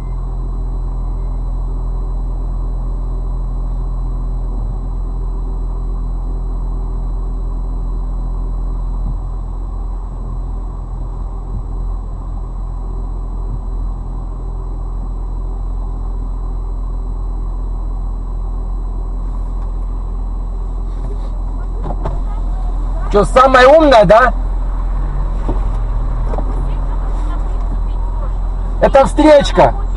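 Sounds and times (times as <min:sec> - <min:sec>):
car engine rumble: 0:00.0 - 0:29.9
road noise: 0:19.0 - 0:29.9.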